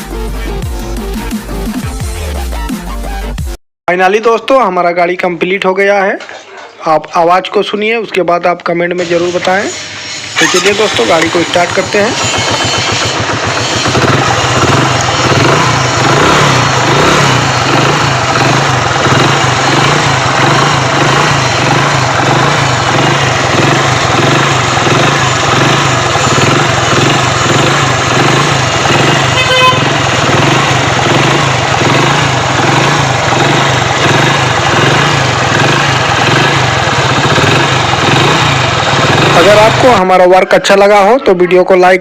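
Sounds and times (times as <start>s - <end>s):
motorcycle engine running: 10.0s - 40.2s.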